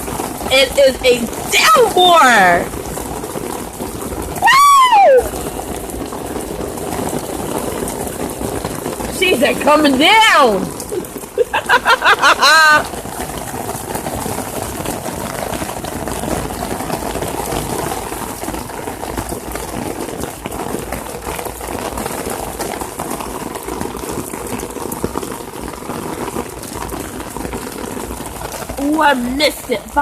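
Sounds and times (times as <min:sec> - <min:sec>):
heavy rain pouring: 0:00.0 - 0:30.0
wavering pitched call: 0:04.4 - 0:05.4.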